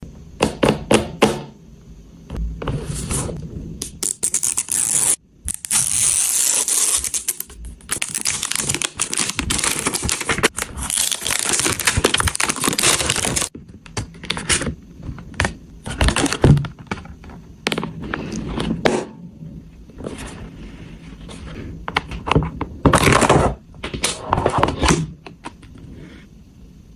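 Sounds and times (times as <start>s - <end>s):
packaging crackling: 4.0s - 13.5s
plastic and cardboard tearing: 4.1s - 13.5s.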